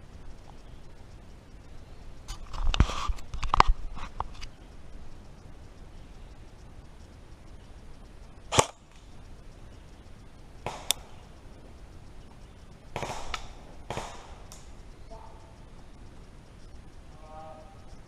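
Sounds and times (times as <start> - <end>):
airsoft gun firing: 8.5 - 9.0, 10.6 - 11.3, 12.9 - 14.8.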